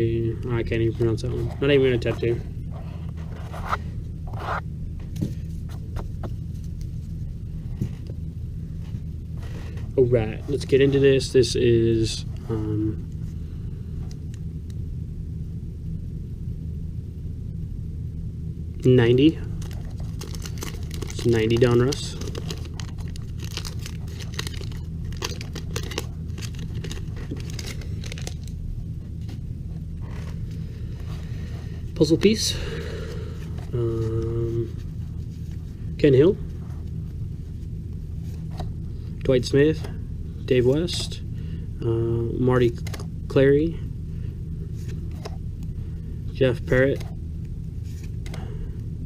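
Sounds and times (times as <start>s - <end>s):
low hum: 0.0s - 49.0s
paper cards rustling: 19.4s - 28.6s.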